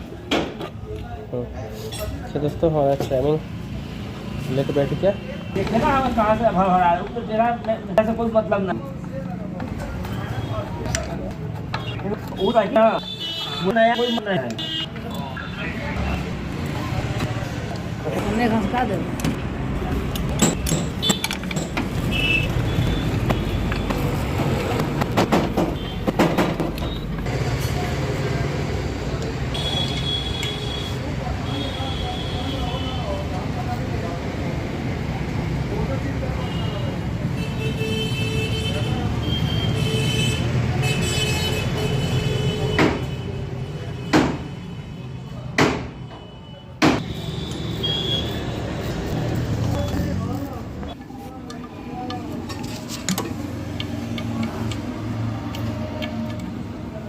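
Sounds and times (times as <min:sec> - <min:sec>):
sharp knocks: 0:24.8 - 0:26.8.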